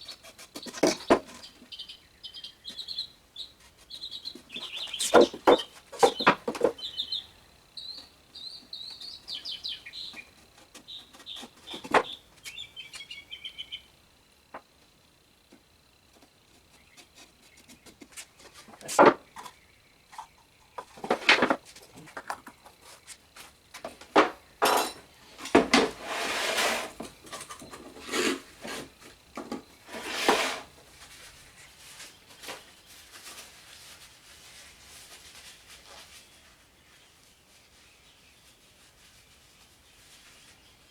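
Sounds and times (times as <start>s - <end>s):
knocks and clatters of wood: 0.5s - 1.6s, 4.3s - 6.9s, 10.2s - 12.4s, 15.6s - 22.8s, 23.8s - 30.7s
rubbing and rustling: 2.6s - 7.2s, 8.6s - 13.2s, 16.0s - 40.9s.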